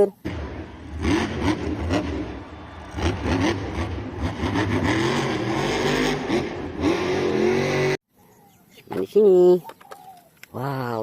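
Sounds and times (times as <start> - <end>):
engine-like revving: 0.2 - 8.0.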